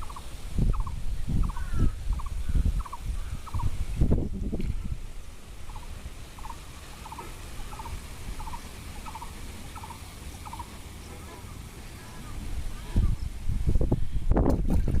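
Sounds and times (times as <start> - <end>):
wind rumble on microphone: 0.0 - 6.5, 12.2 - 15.0
animal rattling call: 5.7 - 11.5.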